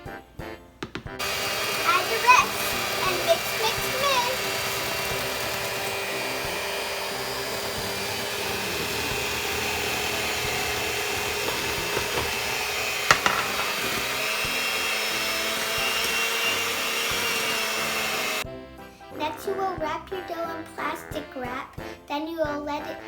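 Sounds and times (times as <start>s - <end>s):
electric mixer humming: 0.8s - 18.4s.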